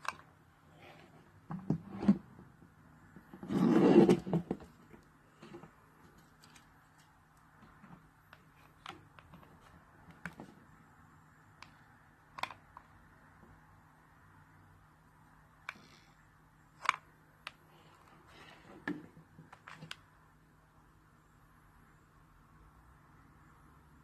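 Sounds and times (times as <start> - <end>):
plastic parts clicking and tapping: 0.0 - 0.3, 11.6 - 12.9
faint low hum: 0.0 - 24.0
scraping rustle: 3.3 - 7.2.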